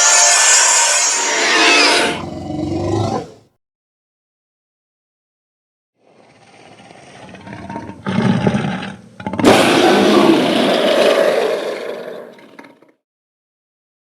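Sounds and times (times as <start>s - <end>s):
dragon roar: 6.0s - 12.9s.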